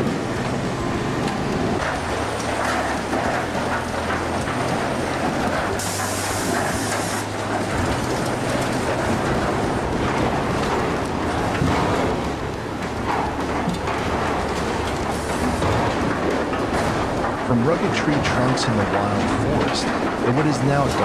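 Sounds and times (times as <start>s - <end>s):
high hiss: 0.0s - 13.6s
low machine hum: 0.0s - 21.0s
rattling and clattering: 0.0s - 21.0s.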